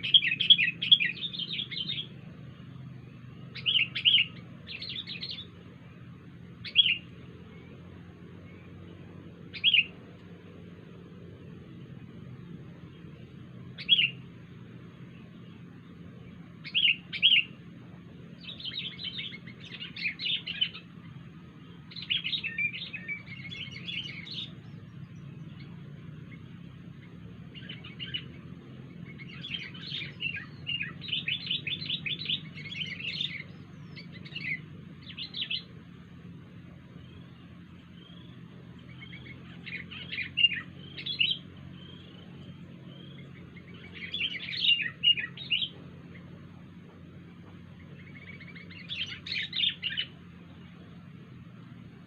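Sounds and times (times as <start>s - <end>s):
bird calling and chattering: 0.0s - 52.0s
steady low hum: 0.0s - 52.0s.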